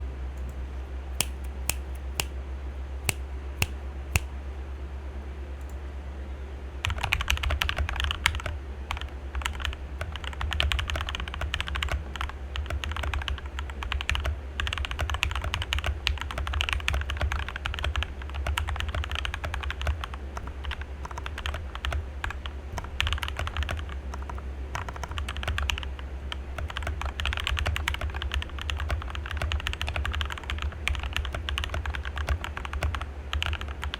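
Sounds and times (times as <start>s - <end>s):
low steady hum: 0.0s - 33.9s
typing on mechanical keyboard: 6.8s - 33.9s.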